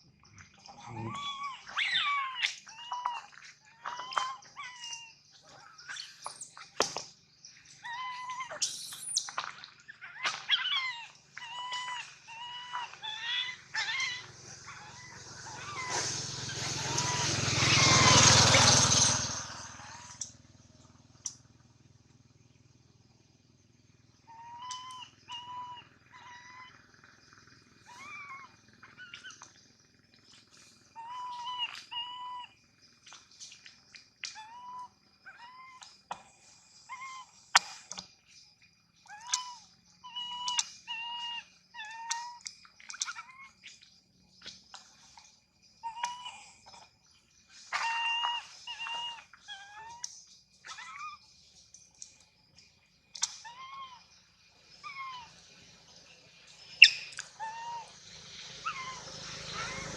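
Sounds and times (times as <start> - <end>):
baby monkey crying: 0.7 - 6.1, 7.8 - 9.2, 10.0 - 18.8, 24.3 - 26.8, 27.9 - 29.4, 31.0 - 32.5, 34.3 - 35.9, 39.1 - 43.6, 45.8 - 46.9, 47.7 - 51.2, 53.2 - 54.1, 54.8 - 55.3, 56.8 - 57.9, 58.6 - 59.9.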